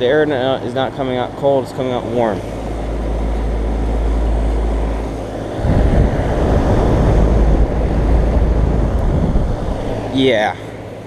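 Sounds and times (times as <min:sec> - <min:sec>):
heat pump low hum: 0:00.0 - 0:11.0
wind rumble on microphone: 0:03.2 - 0:10.5.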